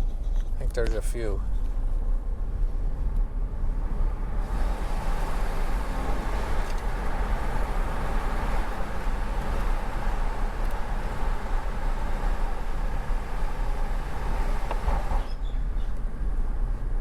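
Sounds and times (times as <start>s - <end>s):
car engine and tyres rumbling: 0.0s - 17.0s
road hiss: 4.2s - 16.0s.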